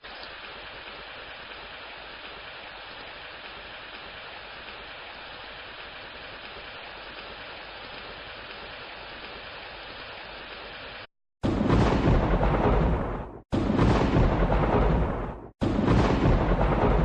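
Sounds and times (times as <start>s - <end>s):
rain falling: 0.0s - 17.0s
thunder clap: 11.4s - 17.0s.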